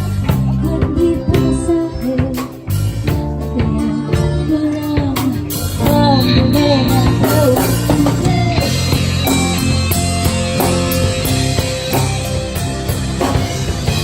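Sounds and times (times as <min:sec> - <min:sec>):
person singing: 0:00.0 - 0:09.4
rock band playing: 0:00.0 - 0:14.0.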